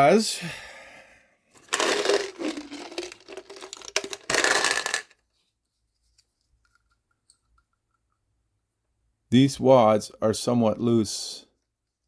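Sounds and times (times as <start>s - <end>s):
plastic packaging crinkling: 1.7s - 4.8s.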